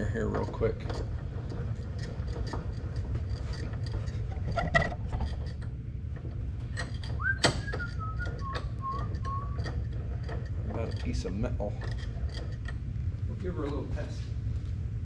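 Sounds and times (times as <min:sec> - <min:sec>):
steady low hum: 0:00.0 - 0:15.0
wavering falling squeak: 0:06.9 - 0:09.9.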